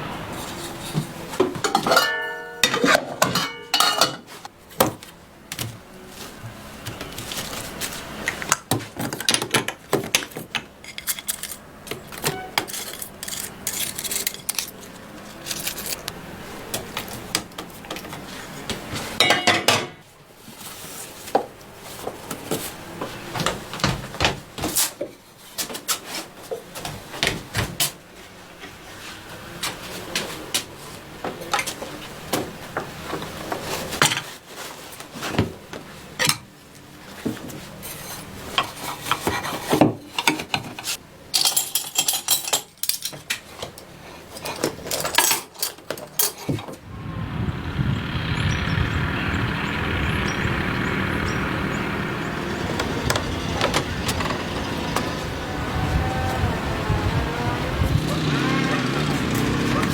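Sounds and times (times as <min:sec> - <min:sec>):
metal cookware clanking: 0:01.4 - 0:04.4, 0:19.2 - 0:20.0.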